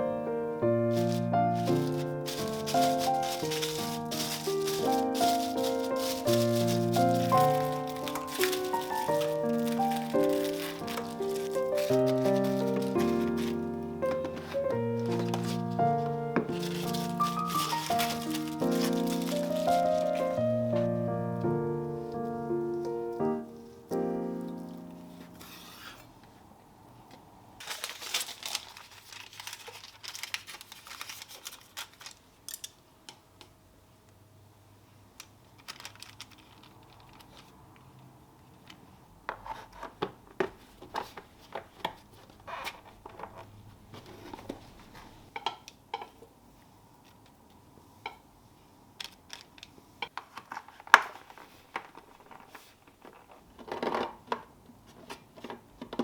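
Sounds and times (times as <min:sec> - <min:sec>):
plastic packaging crinkling: 0:00.9 - 0:26.0, 0:27.6 - 0:32.8, 0:35.4 - 0:37.6.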